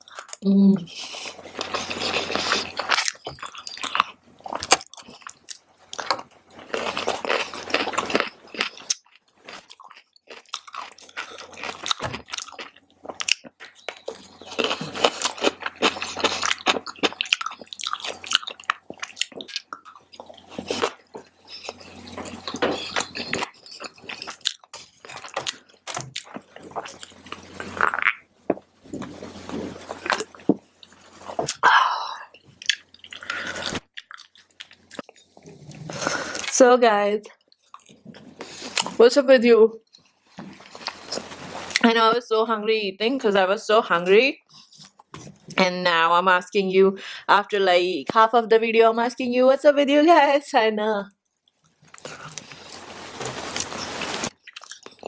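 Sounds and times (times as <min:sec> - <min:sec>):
person chewing food: 0:00.0 - 0:36.5, 0:37.3 - 0:39.0, 0:39.8 - 0:41.8, 0:44.5 - 0:45.5, 0:51.2 - 0:55.0.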